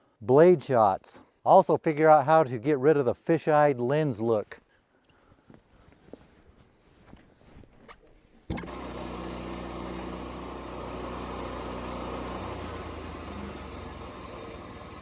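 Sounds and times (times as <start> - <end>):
sawmill motor running: 8.5 - 15.0.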